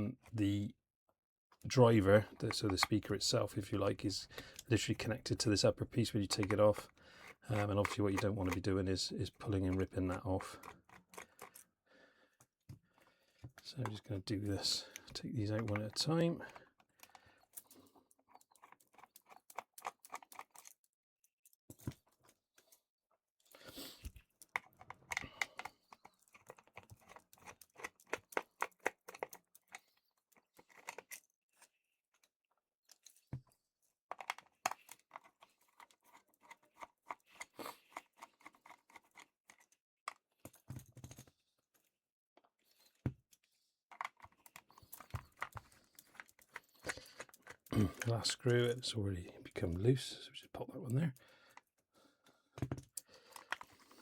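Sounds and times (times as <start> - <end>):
screwdriver clicking and scraping: 2.4 - 3.0, 6.3 - 8.6, 9.5 - 11.6, 14.6 - 20.8, 24.0 - 31.7, 34.1 - 40.7, 43.9 - 48.6, 52.6 - 54.0.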